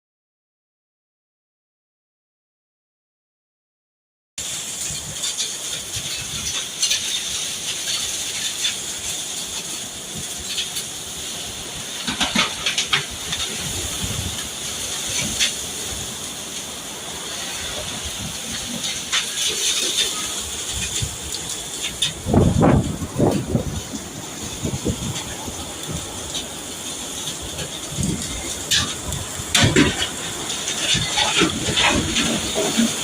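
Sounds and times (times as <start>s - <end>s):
tornado wind rushing: 4.4s - 33.0s
wind buffeting microphone: 11.2s - 16.9s, 17.6s - 33.0s.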